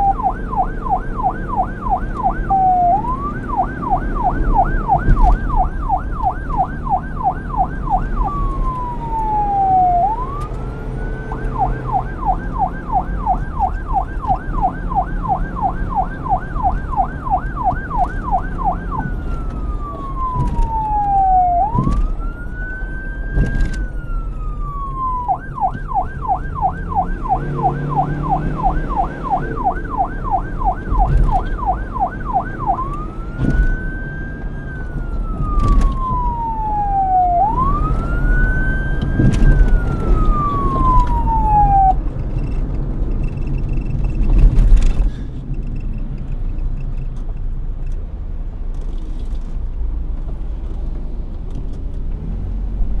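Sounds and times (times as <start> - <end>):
police siren: 0.0 - 42.5
low vehicle rumble: 0.0 - 53.0.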